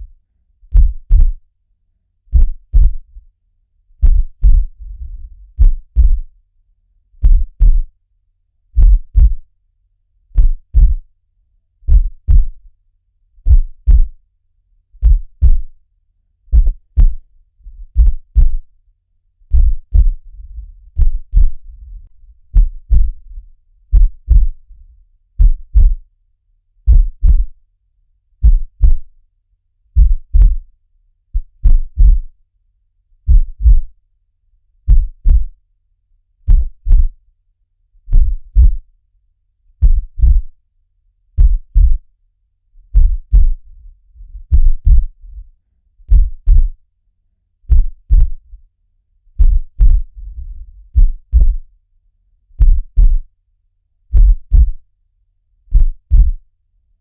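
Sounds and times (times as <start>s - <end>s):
heartbeat lub-dub: 0.7s - 1.4s, 2.3s - 3.2s, 4.0s - 6.3s, 7.2s - 7.9s, 8.8s - 9.5s, 10.4s - 11.1s, 11.9s - 12.7s, 13.5s - 14.2s, 15.0s - 15.8s, 16.5s - 18.7s, 19.5s - 24.7s, 25.4s - 26.0s, 26.9s - 27.6s, 28.4s - 29.1s, 30.0s - 30.7s, 31.4s - 32.4s, 33.3s - 34.0s, 34.9s - 35.6s, 36.5s - 37.2s, 38.1s - 38.9s, 39.8s - 40.5s, 41.4s - 42.1s, 42.9s - 45.5s, 46.1s - 46.8s, 47.7s - 48.5s, 49.4s - 51.7s, 52.6s - 53.3s, 54.1s - 54.8s, 55.7s - 56.4s.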